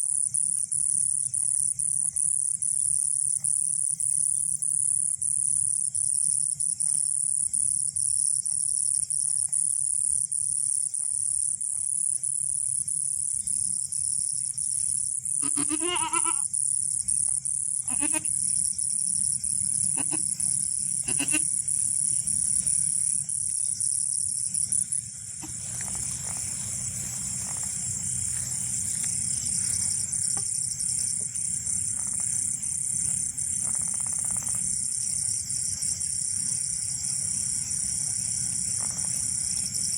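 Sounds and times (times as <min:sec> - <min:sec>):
high insect chirring: 0:05.7 - 0:39.9
goat bleating: 0:15.4 - 0:16.5, 0:17.9 - 0:18.3, 0:20.0 - 0:20.3, 0:21.0 - 0:21.5.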